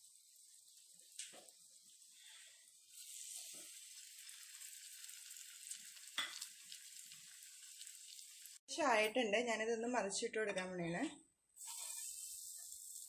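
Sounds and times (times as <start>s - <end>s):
bread frying in oil sizzling: 0.0s - 8.6s, 11.6s - 13.0s.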